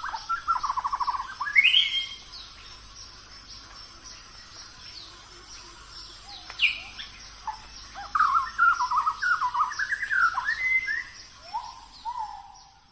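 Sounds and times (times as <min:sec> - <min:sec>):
faint high bird chirps: 0:00.0 - 0:12.9
bird warbling: 0:05.6 - 0:12.8.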